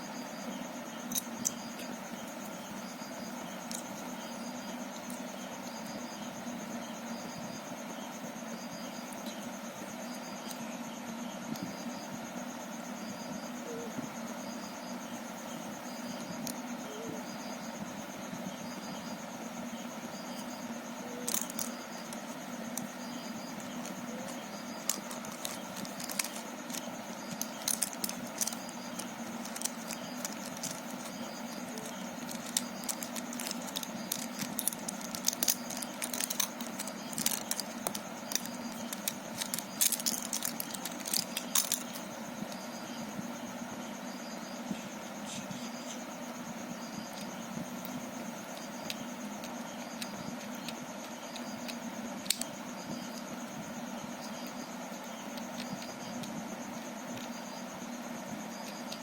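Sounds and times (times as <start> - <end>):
steady background hum: 0.0 - 59.0
plastic puzzle cube clicking: 24.8 - 42.0, 50.4 - 52.5.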